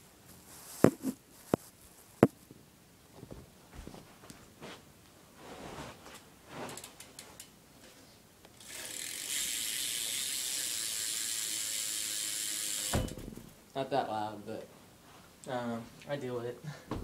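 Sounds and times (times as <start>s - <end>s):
bicycle hub ratcheting buzz: 8.6s - 13.5s.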